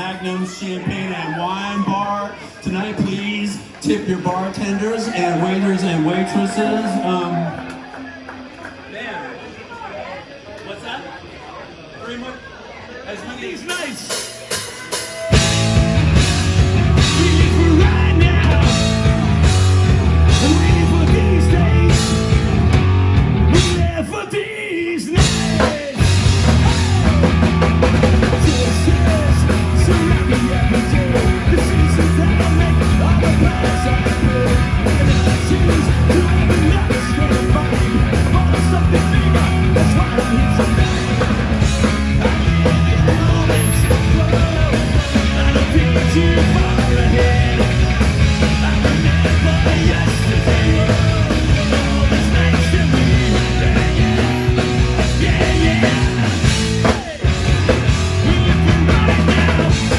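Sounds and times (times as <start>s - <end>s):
driving drum beat: 13.9s - 24.4s, 25.1s - 59.9s
rock band playing: 14.0s - 24.4s, 25.1s - 59.9s
electric guitar: 15.1s - 24.1s, 25.2s - 59.9s
heavy bass: 15.3s - 24.2s, 25.2s - 59.9s.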